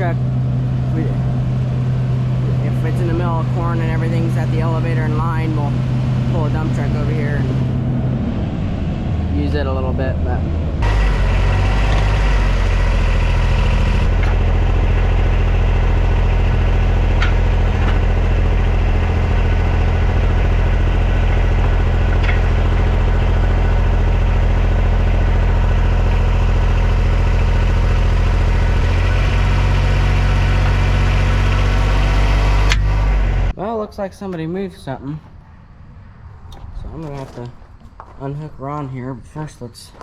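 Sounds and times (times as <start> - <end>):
vehicle engine humming: 0.0 - 40.0.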